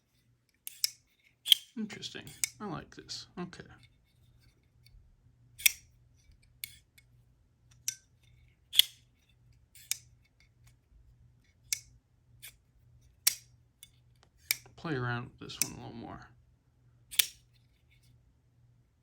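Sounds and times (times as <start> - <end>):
folding knife blade clicking: 0.6 - 2.6, 5.6 - 5.9, 6.6 - 6.8, 7.7 - 8.1, 8.7 - 9.0, 9.8 - 10.1, 11.7 - 12.6, 13.2 - 14.7, 17.1 - 17.5.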